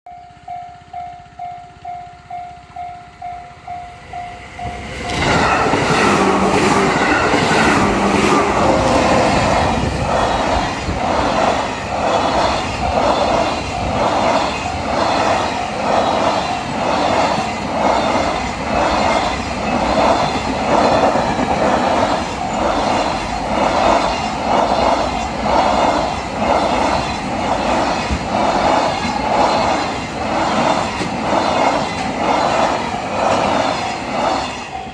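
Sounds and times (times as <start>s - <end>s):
level-crossing bell ringing: 0.1s - 5.1s, 34.6s - 34.9s
trains running past: 0.1s - 34.9s.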